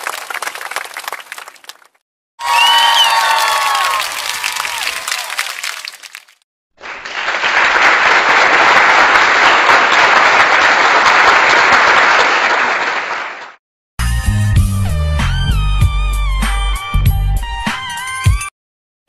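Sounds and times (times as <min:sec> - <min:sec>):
crowd clapping: 0:00.0 - 0:13.6.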